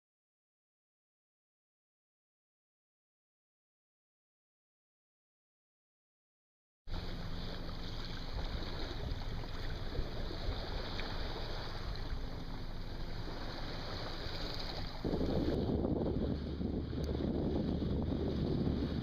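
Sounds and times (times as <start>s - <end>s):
boat engine hum: 6.9s - 19.0s
water noise: 6.9s - 19.0s
wind buffeting microphone: 8.1s - 19.0s.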